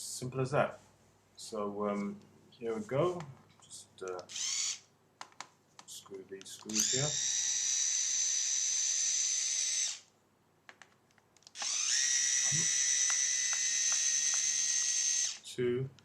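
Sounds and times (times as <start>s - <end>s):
electric screwdriver whining: 4.3s - 4.8s, 6.6s - 10.1s, 11.5s - 15.4s.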